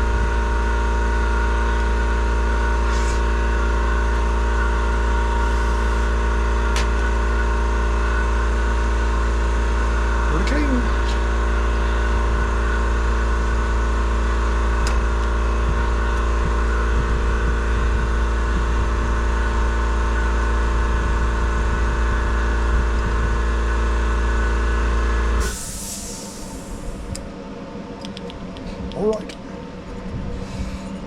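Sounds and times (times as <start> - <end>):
air compressor motor hum: 0.0 - 28.9, 29.6 - 31.0
hiss of released air: 25.4 - 27.1.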